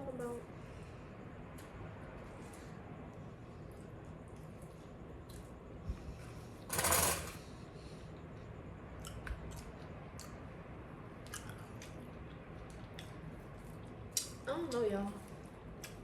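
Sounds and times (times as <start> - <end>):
chewing: 11.2 - 16.0.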